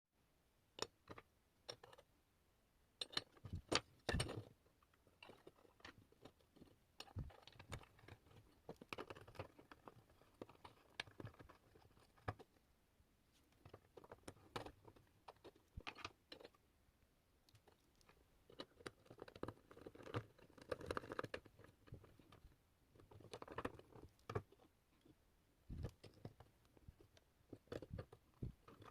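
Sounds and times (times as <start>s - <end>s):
small clicks and taps: 17.4s - 28.9s.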